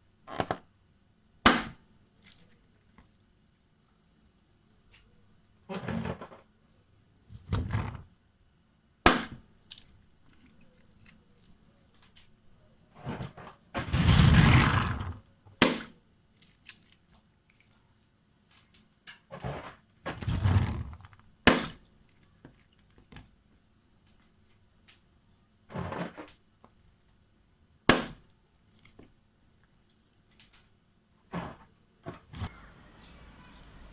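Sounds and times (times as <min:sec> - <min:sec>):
balloon rubbing and squeezing: 0:07.3 - 0:08.0, 0:13.8 - 0:15.2, 0:20.1 - 0:21.2
balloons popping: 0:13.8 - 0:15.8.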